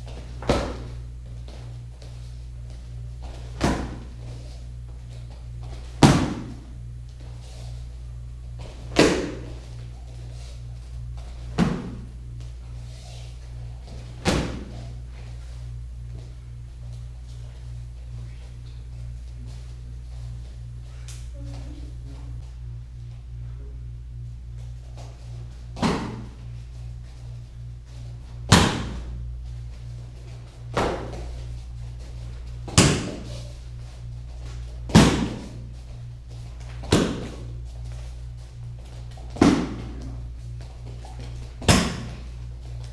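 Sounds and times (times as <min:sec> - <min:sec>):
low room hum: 0:00.0 - 0:42.9
kicks striking a pad: 0:00.4 - 0:00.9, 0:03.4 - 0:04.2, 0:06.0 - 0:06.7, 0:08.6 - 0:09.6, 0:11.5 - 0:12.1, 0:14.1 - 0:14.8, 0:25.8 - 0:26.4, 0:28.5 - 0:29.2, 0:30.7 - 0:31.4, 0:32.6 - 0:33.3, 0:34.9 - 0:35.6, 0:36.8 - 0:37.5, 0:39.3 - 0:40.1, 0:41.6 - 0:42.3.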